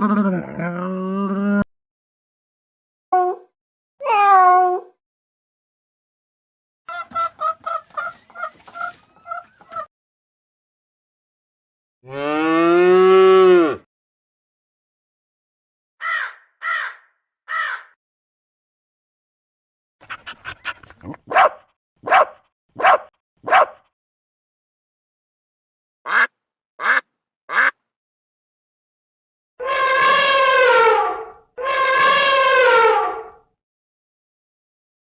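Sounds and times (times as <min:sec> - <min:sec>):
cow mooing: 0:12.0 - 0:13.8
crow-like caws: 0:16.0 - 0:18.0.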